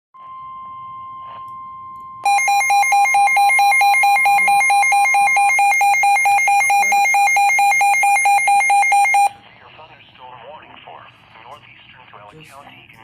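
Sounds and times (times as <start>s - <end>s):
pulsing two-pitch alarm: 0.2s - 9.4s
steady high electronic tone: 2.2s - 9.4s.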